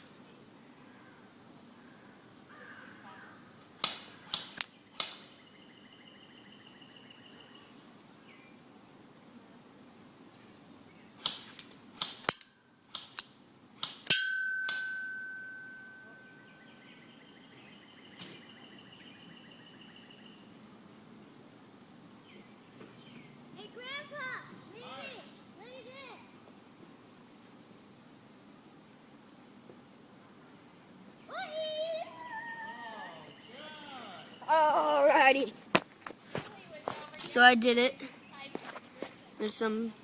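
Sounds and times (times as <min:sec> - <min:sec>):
bb ringing on metal target: 0:14.1 - 0:16.4.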